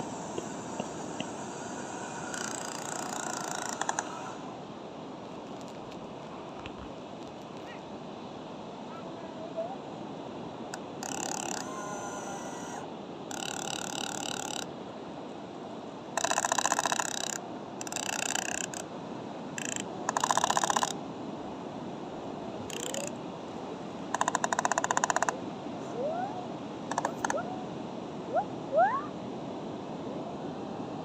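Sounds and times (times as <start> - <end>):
trilling animal calls: 0.0 - 4.4
steady hiss: 0.0 - 7.6.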